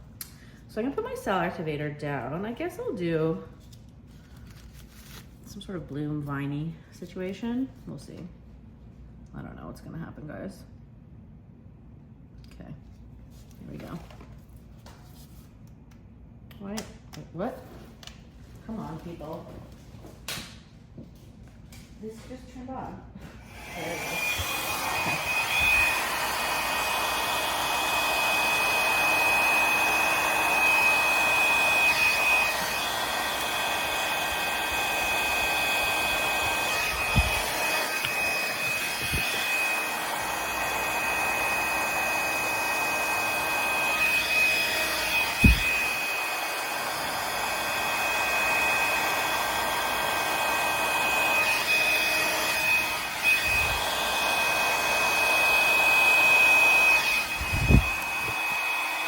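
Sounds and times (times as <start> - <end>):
hair dryer blowing with high whine: 0.6 - 3.4, 22.6 - 59.0.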